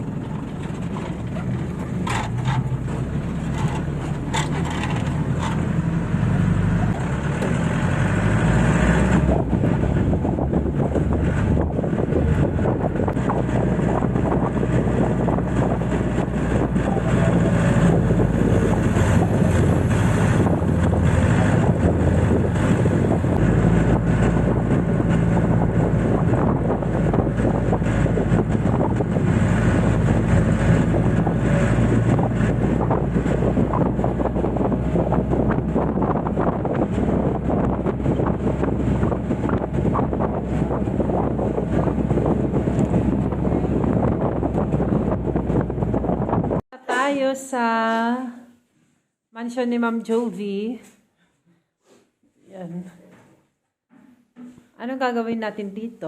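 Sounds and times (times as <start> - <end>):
car engine running: 0.0 - 8.4, 9.1 - 46.6
road noise: 0.0 - 46.6
wind buffeting microphone: 0.0 - 46.7
sharp knocks: 53.9 - 54.7.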